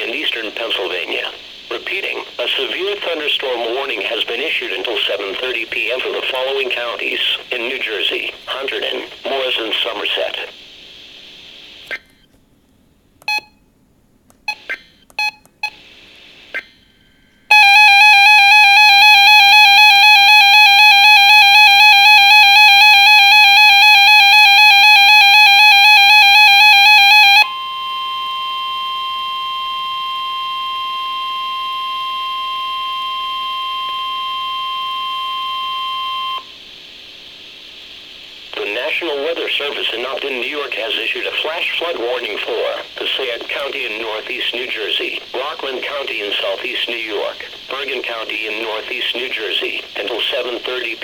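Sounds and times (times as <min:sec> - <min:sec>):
screeching digital code bursts: 0:14.5 - 0:15.8, 0:17.5 - 0:27.5
steady single-pitch alert tone: 0:17.5 - 0:36.5
wavering two-tone attention signal: 0:17.5 - 0:36.5.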